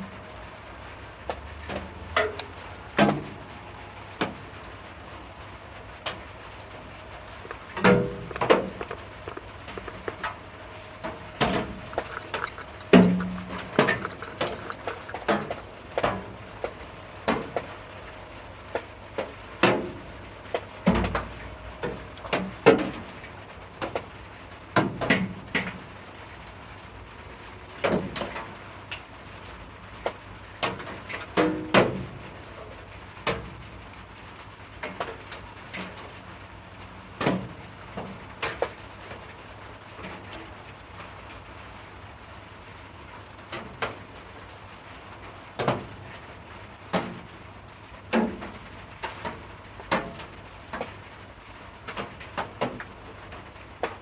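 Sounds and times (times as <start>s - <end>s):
low steady hum: 0.0s - 24.5s
sharp knocks and clicks: 7.4s - 10.4s, 11.4s - 16.2s.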